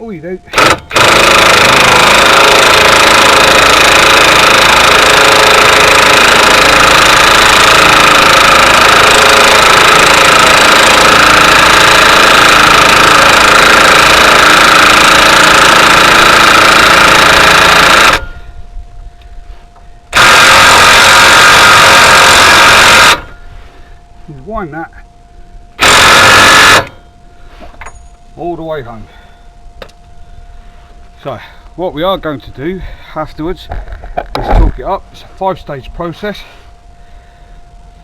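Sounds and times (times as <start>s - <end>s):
impact wrench running: 0.5s - 18.5s, 20.1s - 23.4s, 25.8s - 27.0s.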